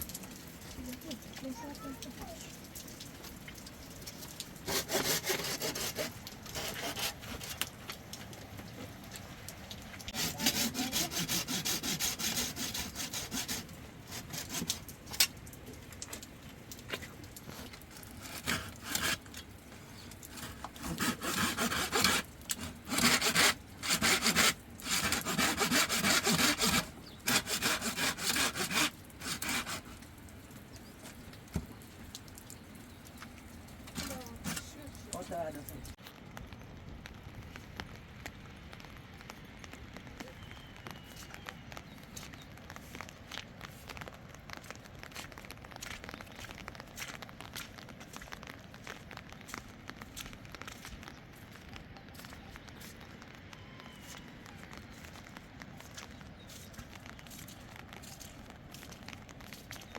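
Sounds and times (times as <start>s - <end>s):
rasping scraping strokes: 4.7s - 7.7s, 10.1s - 15.3s, 17.6s - 19.4s, 20.1s - 30.0s.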